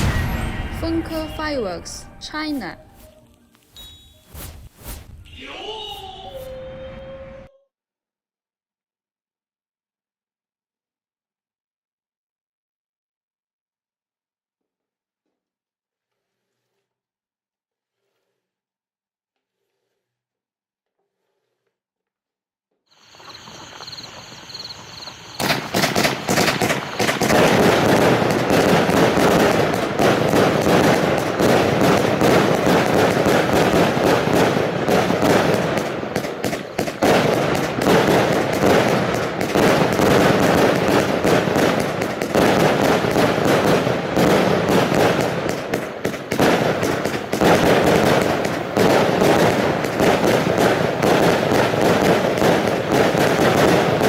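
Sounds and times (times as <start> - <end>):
firework shots firing: 0.0 - 5.4, 23.0 - 54.0
firework fizzing: 0.0 - 6.5, 22.9 - 54.0.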